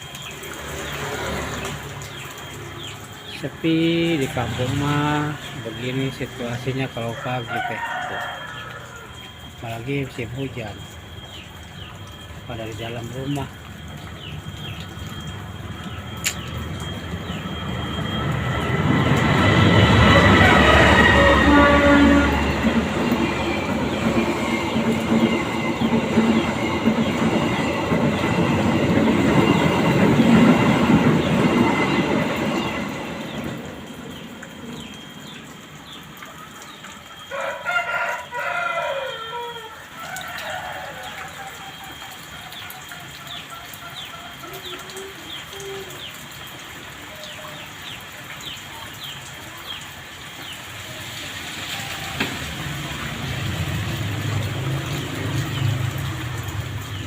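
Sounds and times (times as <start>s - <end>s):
train passing rumble: 0.0s - 37.3s, 40.9s - 57.0s
rain hiss: 0.0s - 57.0s
rooster crowing: 7.0s - 9.3s, 20.0s - 22.6s, 37.2s - 41.9s.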